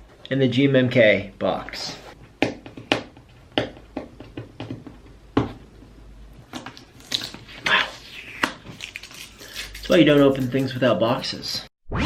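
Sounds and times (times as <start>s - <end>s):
knocks and taps on cardboard: 2.4s - 5.6s.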